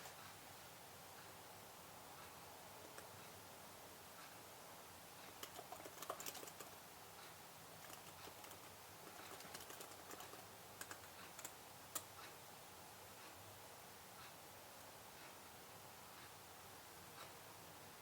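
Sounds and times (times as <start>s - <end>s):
keyboard typing clicks: 5.3s - 6.8s, 7.8s - 12.1s.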